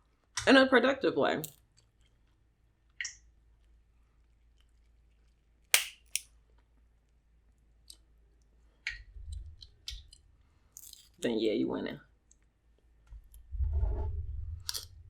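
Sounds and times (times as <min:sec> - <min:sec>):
sharp shell cracks: 0:05.7 - 0:06.3.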